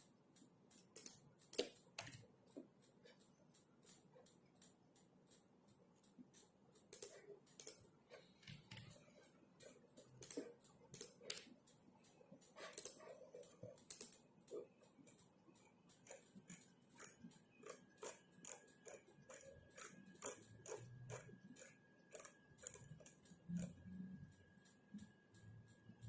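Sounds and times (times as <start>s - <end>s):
typing on computer keyboard: 0.0s - 26.0s.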